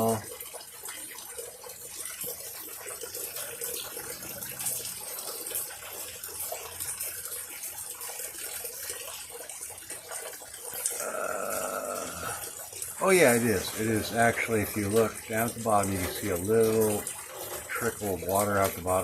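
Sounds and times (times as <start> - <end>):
rainwater trickling through gutters: 0.0 - 19.0.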